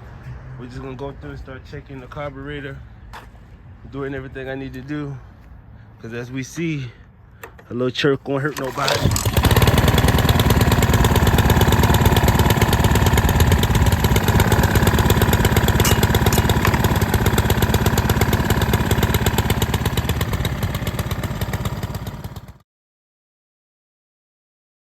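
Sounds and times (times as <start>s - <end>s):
small gasoline engine running: 8.6s - 22.6s.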